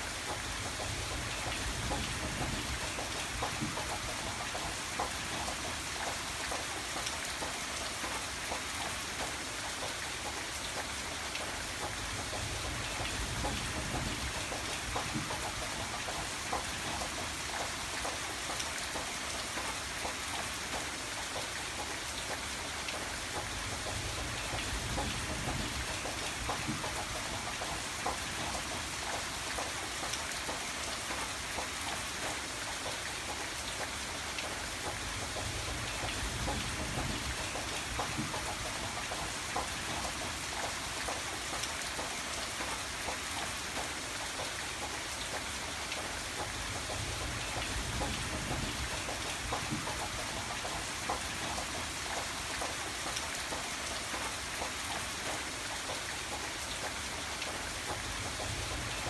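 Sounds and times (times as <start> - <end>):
rain pattering: 0.0 - 59.0.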